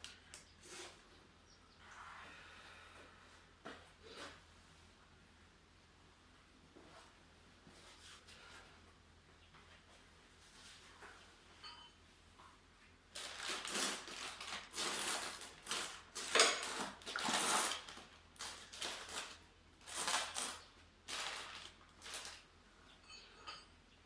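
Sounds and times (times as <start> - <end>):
objects clattering and rustling: 13.1 - 23.8.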